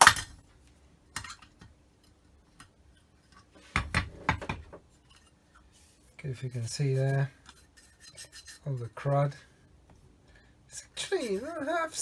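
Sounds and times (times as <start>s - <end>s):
rubber hammer knocking on metal: 3.8s - 4.8s.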